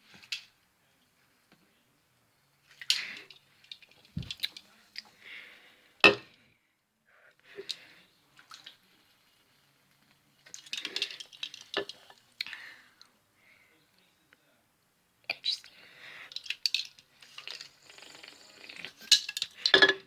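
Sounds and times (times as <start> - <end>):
soda sipped and swallowed: 17.4 - 19.0.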